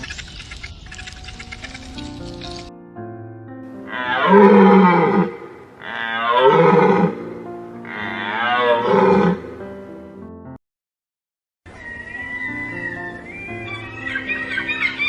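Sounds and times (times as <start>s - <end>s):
animal calling: 0.0s - 2.7s, 3.8s - 7.2s, 7.9s - 9.5s, 11.7s - 15.0s
background music: 1.2s - 10.6s, 11.7s - 15.0s.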